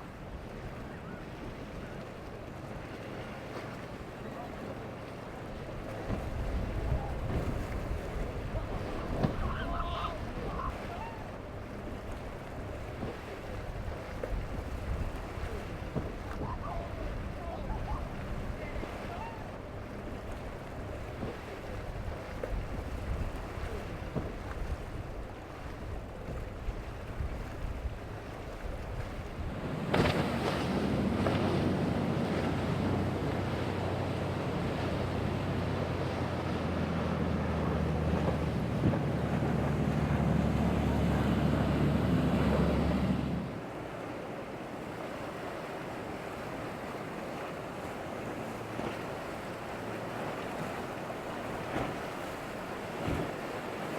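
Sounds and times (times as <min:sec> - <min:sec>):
outboard engine running: 0:00.0 - 0:53.9
roar of waves: 0:00.0 - 0:53.9
surf washing: 0:00.0 - 0:53.9
wind buffeting microphone: 0:05.6 - 0:43.6.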